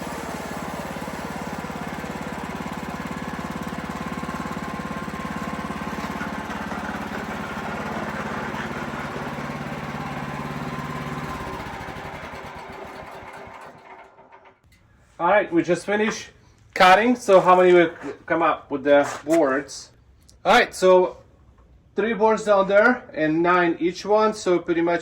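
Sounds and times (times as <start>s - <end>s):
saw blade cutting log: 0.0s - 11.2s
band sawmill engine running: 0.0s - 14.7s.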